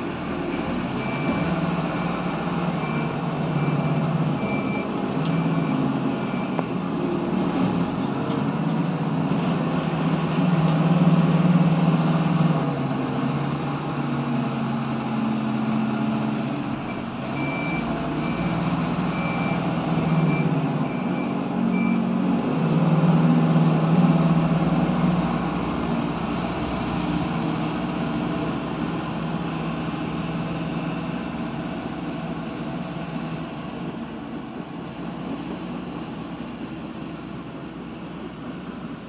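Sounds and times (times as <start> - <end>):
diesel excavator engine running: 0.0 - 39.0.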